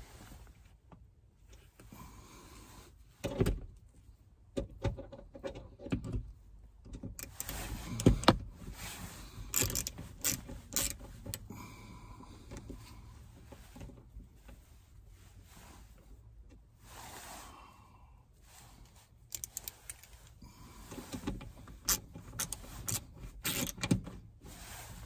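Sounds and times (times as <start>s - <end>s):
clicks and knocks handling sun visor: 3.2s - 8.8s, 9.4s - 11.5s, 12.3s - 14.7s, 19.2s - 24.4s.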